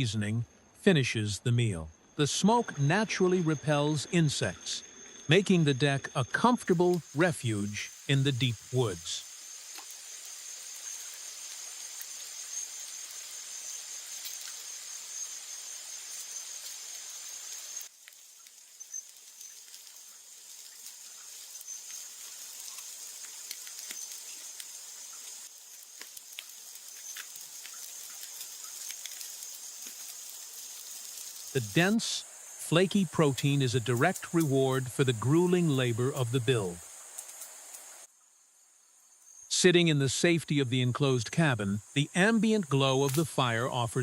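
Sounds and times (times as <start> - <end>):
insects chirring: 0.0 - 44.0
small clicks and crackles: 9.7 - 15.3, 16.0 - 31.6, 37.1 - 38.1.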